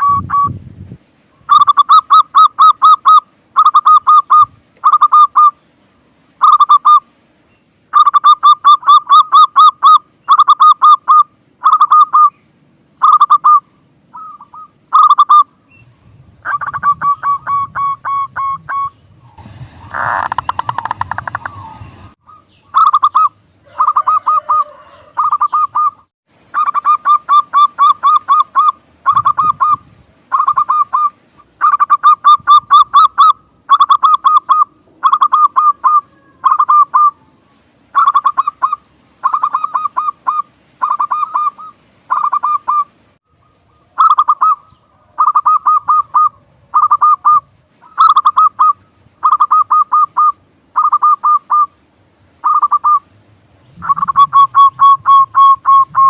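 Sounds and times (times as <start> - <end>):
dove cooing: 1.5 - 5.6, 16.5 - 19.0, 19.8 - 37.4, 38.0 - 51.8, 52.4 - 53.1, 53.7 - 56.0.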